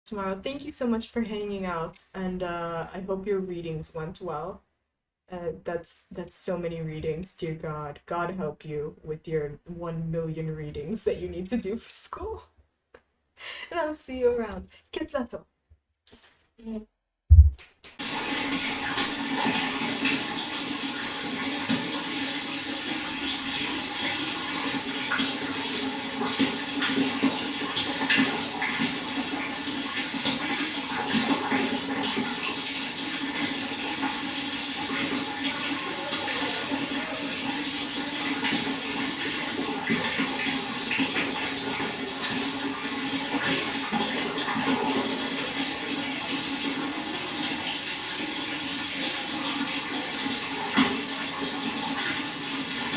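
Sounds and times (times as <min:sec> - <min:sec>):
running water splashing: 0:17.3 - 0:52.9.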